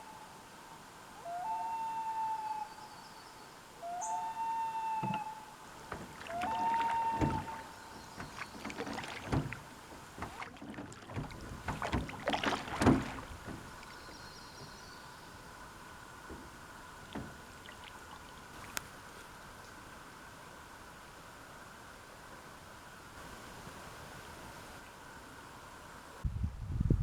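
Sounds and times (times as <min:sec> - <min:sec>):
waves lapping against shore: 0:05.0 - 0:26.2.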